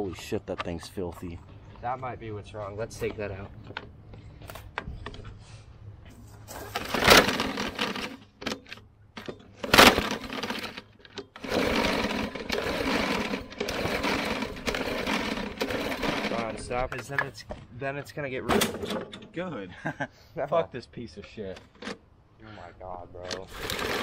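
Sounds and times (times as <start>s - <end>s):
lawn mower engine running unevenly: 6.5s - 16.9s, 23.3s - 24.0s
recoil starter pulls: 6.5s - 17.3s, 23.2s - 24.0s.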